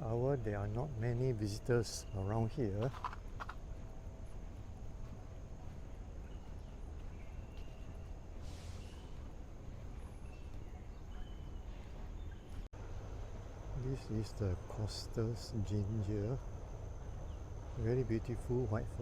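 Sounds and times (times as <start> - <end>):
steady low rumble: 0.0 - 19.0
faint bird chirps: 0.3 - 2.8, 5.7 - 12.7
rustling hiss: 8.2 - 10.0.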